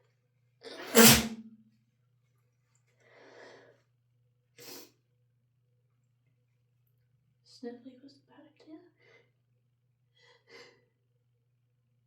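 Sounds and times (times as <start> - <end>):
sharp sniff: 0.8 - 1.4.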